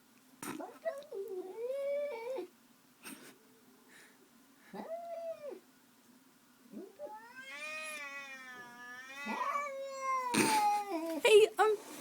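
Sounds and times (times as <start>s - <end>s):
cat caterwauling: 4.7s - 5.6s, 6.7s - 11.2s.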